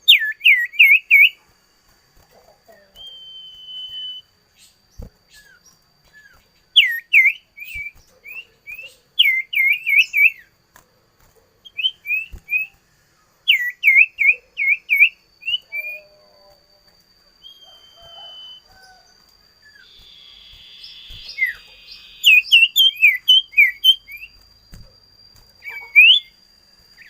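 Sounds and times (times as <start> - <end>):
songbird whistling song: 0.0 - 1.5, 2.6 - 10.6, 11.6 - 12.8, 13.4 - 27.0
faint steady high tone: 11.2 - 27.0.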